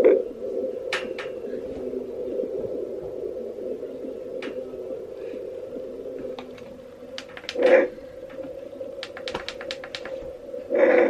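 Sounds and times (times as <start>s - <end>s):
sharp clicks and crackles: 6.4s - 10.3s.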